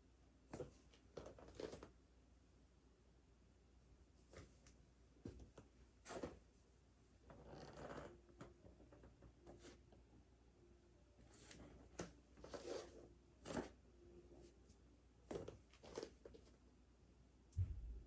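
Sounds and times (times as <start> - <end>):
clothing rustling against a mat: 4.2 - 6.6, 11.3 - 13.8.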